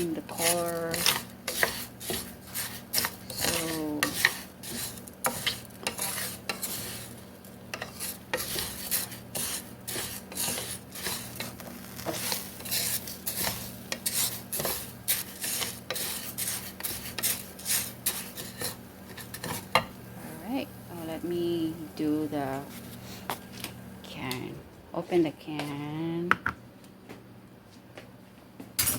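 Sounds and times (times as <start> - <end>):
spoon scraping rice in a pan: 0.0 - 20.0
light sizzle: 0.0 - 25.7.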